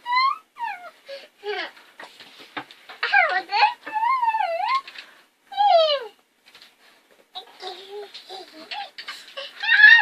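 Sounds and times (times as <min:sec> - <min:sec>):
child squealing: 0:09.5 - 0:10.0.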